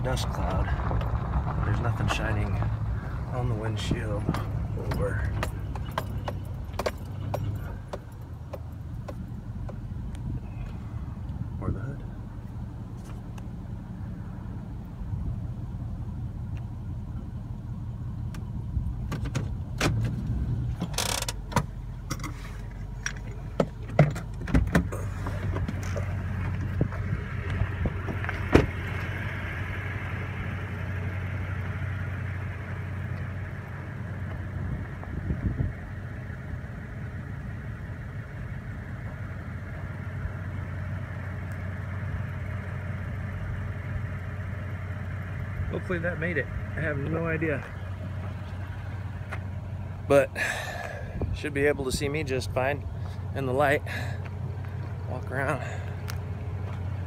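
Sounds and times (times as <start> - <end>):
truck engine humming: 0.0 - 57.0
sharp clicks and knocks: 4.2 - 9.8, 19.1 - 22.4, 23.0 - 29.1.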